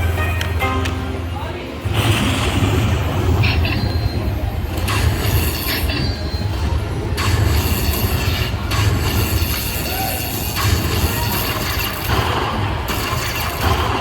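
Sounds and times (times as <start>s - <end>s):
slot machine chimes: 0.0s - 2.0s.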